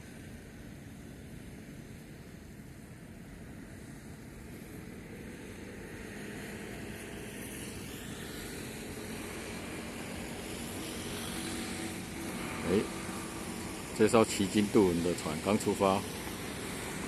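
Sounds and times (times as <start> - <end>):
steady low hum: 0.0 - 17.0
ferry engine running: 3.4 - 17.0.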